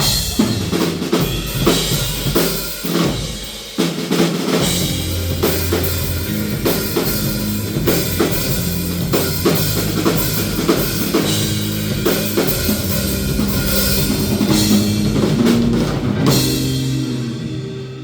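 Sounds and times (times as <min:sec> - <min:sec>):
drum kit hits: 0:00.0 - 0:18.0
rock band music: 0:00.0 - 0:18.0
low bass notes: 0:04.8 - 0:18.0.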